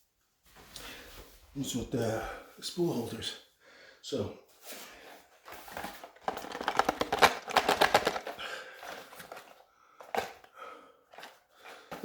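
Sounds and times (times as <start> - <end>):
cardboard rustling: 4.7 - 10.5, 11.1 - 12.0.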